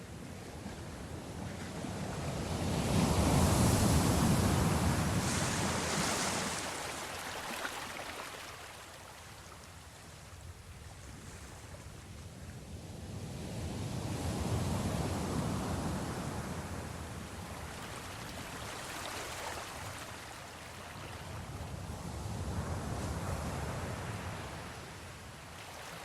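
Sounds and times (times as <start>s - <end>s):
ocean waves breaking: 3.1s - 8.9s.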